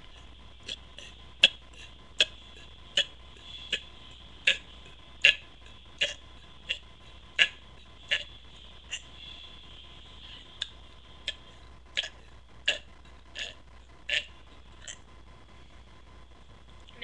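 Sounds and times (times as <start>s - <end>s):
throat gulping clicks: 0.1s - 9.1s, 10.6s - 15.1s.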